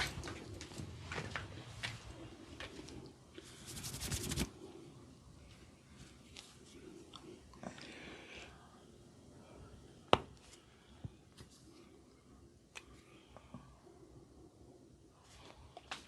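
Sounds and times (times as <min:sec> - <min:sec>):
hands rustling hair and skin: 0:03.6 - 0:04.6.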